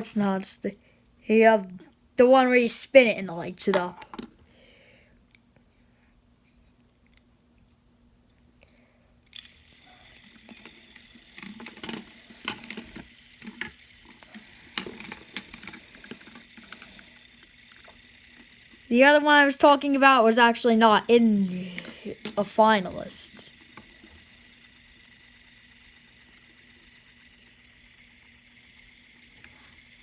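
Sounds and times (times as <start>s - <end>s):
fidget spinners clicking and spinning: 0.0s - 4.4s, 9.2s - 30.0s
steady high hiss: 9.3s - 30.0s.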